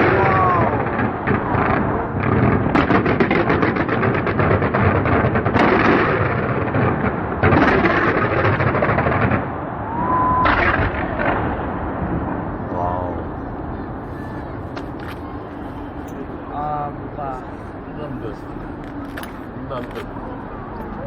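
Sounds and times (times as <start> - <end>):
fireworks crackling bangs: 0.0 - 20.5
continuous rumble: 0.0 - 21.0
rising firework whistle: 9.8 - 11.2.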